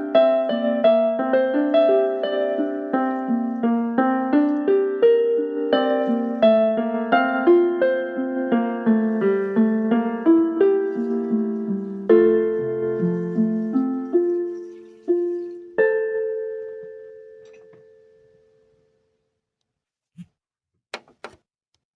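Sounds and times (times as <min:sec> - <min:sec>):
slow piano melody: 0:00.0 - 0:19.0.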